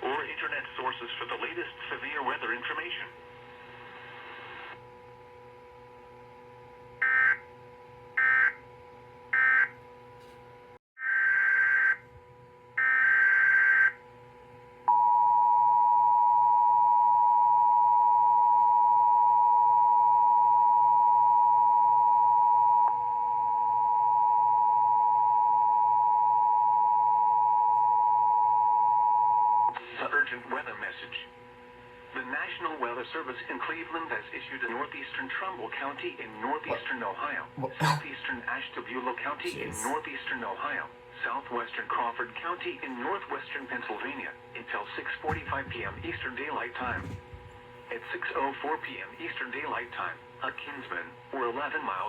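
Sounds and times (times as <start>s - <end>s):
faint steady hum: 0.0s - 10.8s, 11.6s - 52.0s.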